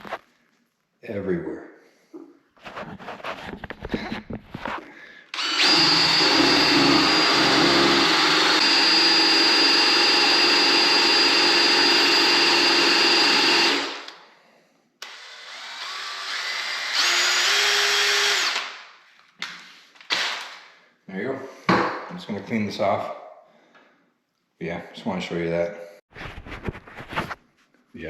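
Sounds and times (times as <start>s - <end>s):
power drill spinning paint mixer: 5.3s - 14.2s, 15.0s - 18.7s.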